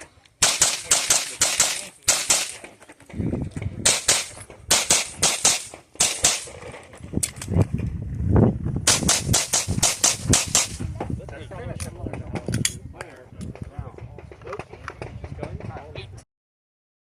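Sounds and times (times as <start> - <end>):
pistol shots: 0.4 - 2.6, 3.8 - 6.6, 8.9 - 10.8.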